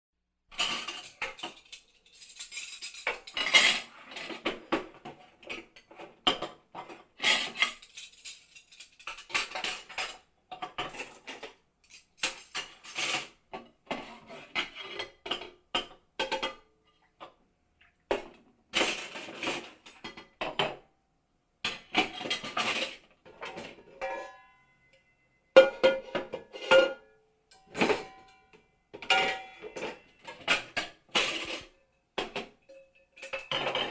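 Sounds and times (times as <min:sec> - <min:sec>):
pots and pans clattering: 0:00.5 - 0:17.4, 0:18.1 - 0:20.9, 0:21.7 - 0:24.9, 0:25.6 - 0:33.9.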